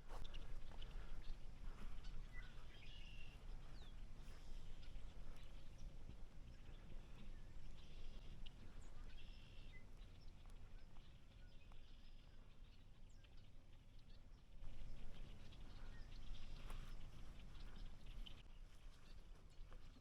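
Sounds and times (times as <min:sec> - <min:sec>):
faint bird chirps: 0:00.1 - 0:20.0
low wind rumble: 0:14.4 - 0:18.4.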